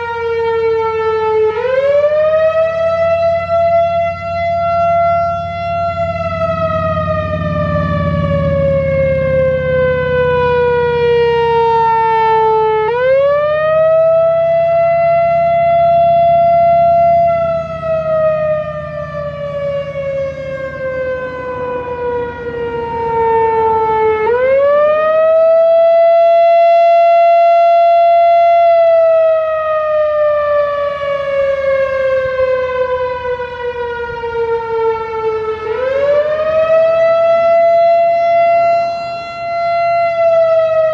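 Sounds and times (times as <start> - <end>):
outdoor warning siren wailing: 0.0 - 40.9.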